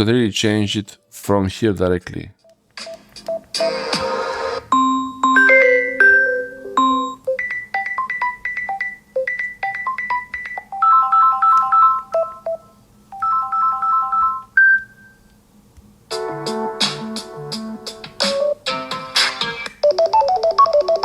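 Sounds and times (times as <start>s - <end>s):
phone ringtone melody: 2.8s - 14.8s, 19.8s - 21.0s
different ringtone: 2.8s - 15.2s, 19.8s - 21.0s.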